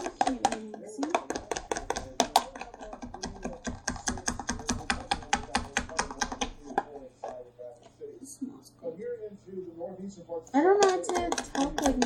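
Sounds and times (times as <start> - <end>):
utensil clicking against bowl: 0.0 - 7.4, 10.8 - 12.0.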